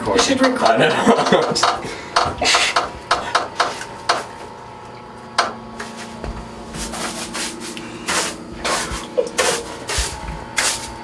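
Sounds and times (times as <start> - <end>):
clicks and rustles: 0.0 - 4.5
elevator hum: 0.0 - 10.8.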